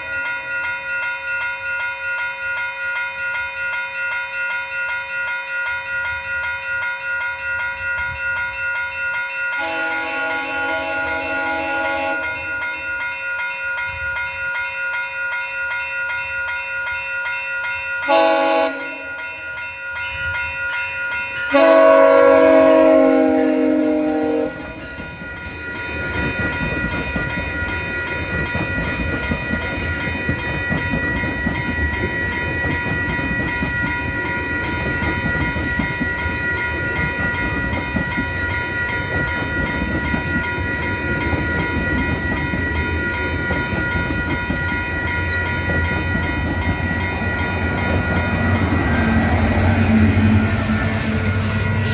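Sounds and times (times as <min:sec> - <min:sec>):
train horn blasts: 0:09.6 - 0:12.5, 0:18.1 - 0:19.4, 0:21.5 - 0:24.9, 0:48.3 - 0:51.9
train wheels clattering on rails: 0:21.4 - 0:51.9.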